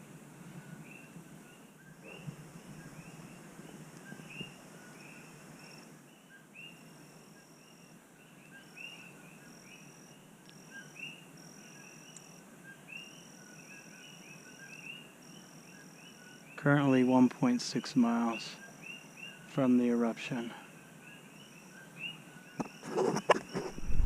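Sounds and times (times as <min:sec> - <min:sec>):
frogs calling: 0:00.8 - 0:24.0
high insect trill: 0:01.8 - 0:24.0.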